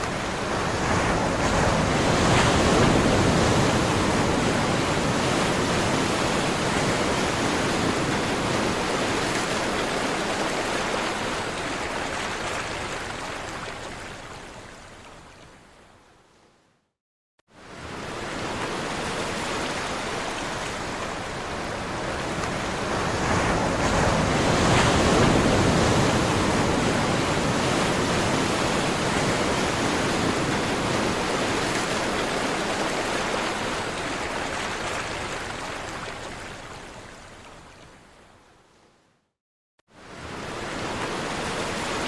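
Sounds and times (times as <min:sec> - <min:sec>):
waves washing on shore: 0:00.0 - 0:15.2, 0:17.5 - 0:37.9, 0:39.9 - 0:42.0.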